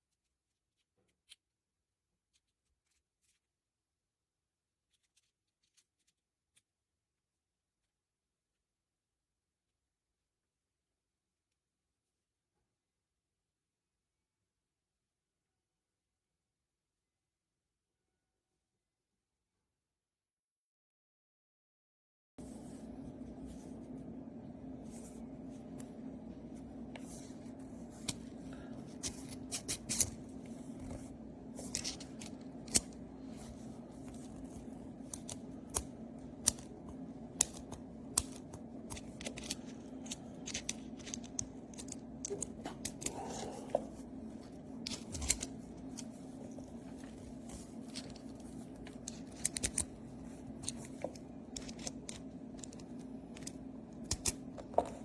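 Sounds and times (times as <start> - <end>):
steady low hum: 22.4 - 55.0.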